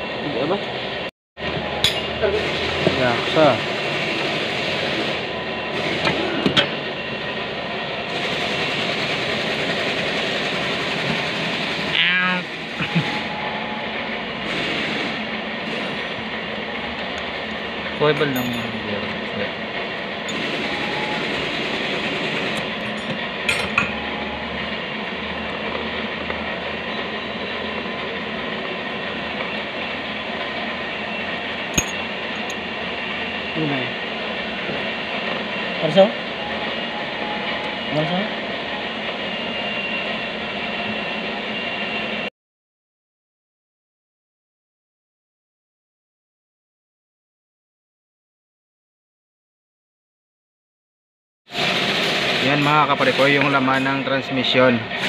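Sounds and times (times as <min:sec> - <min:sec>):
mechanical background noise: 0:00.0 - 0:42.3, 0:51.5 - 0:55.0
metal tools clinking: 0:18.1 - 0:18.9, 0:31.8 - 0:32.6.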